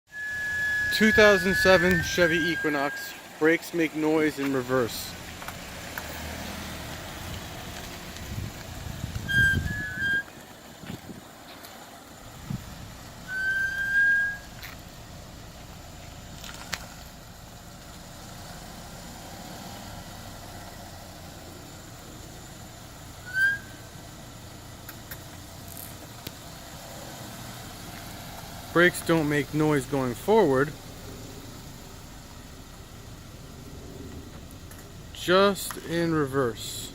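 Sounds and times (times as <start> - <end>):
disc brakes squealing: 0.1 - 5.0, 9.1 - 10.4, 13.2 - 14.8, 23.2 - 24.0.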